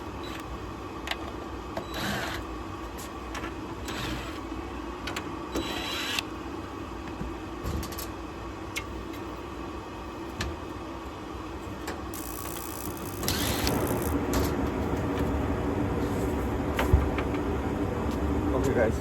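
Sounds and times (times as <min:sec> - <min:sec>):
motor hum: 0:12.1 - 0:18.7.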